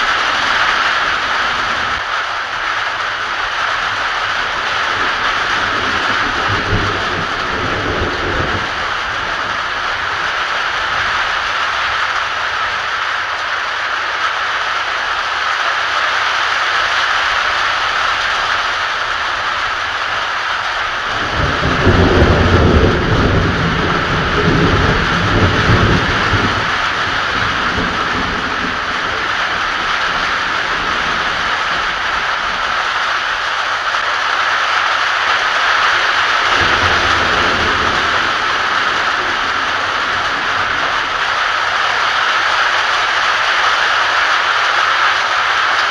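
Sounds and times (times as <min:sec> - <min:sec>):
heavy rain: 0:00.0 - 0:45.9
thunder rumbling: 0:03.6 - 0:12.3, 0:20.8 - 0:33.5, 0:35.4 - 0:42.8.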